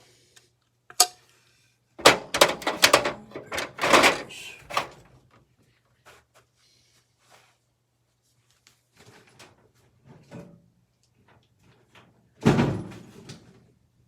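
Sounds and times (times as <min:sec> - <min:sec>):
saw parts knocking and clattering: 0:02.0 - 0:05.0.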